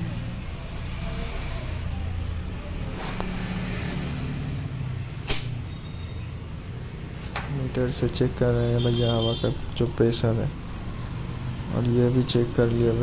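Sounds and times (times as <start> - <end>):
compressed air hissing: 5.1 - 5.7.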